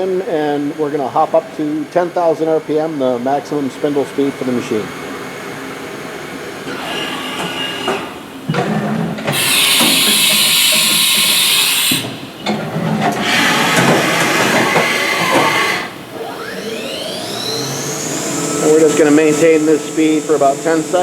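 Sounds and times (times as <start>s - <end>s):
milling machine motors running: 0.4s - 12.2s, 13.1s - 21.0s
loud air hiss: 9.3s - 12.4s, 18.1s - 21.0s.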